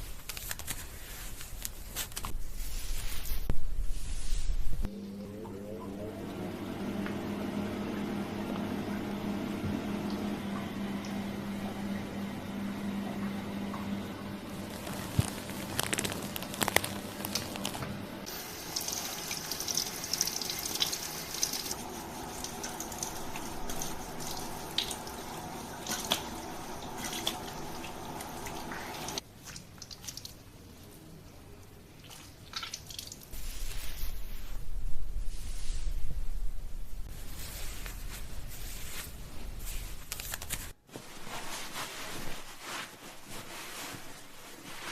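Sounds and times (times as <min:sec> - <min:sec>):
steady hum: 0:04.5 - 0:29.2
water running into basin: 0:18.3 - 0:30.4.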